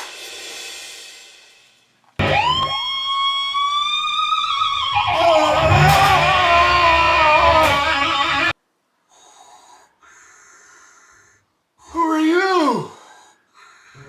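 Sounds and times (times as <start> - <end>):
loud electric guitar music: 2.2 - 8.5.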